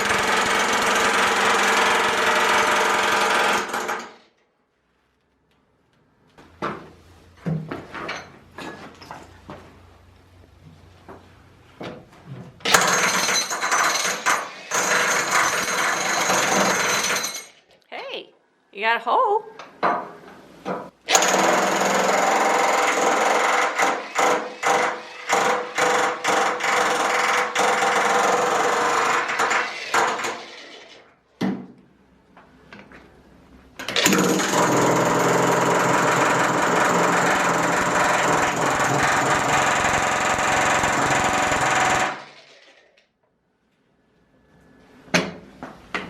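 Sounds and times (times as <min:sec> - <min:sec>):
power tool rapid-fire noise: 0:34.0 - 0:42.9.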